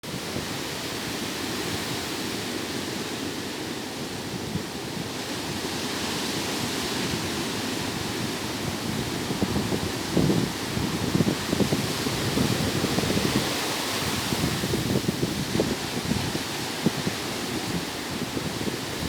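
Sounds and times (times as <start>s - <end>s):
ocean waves breaking on beach: 0.0s - 19.0s.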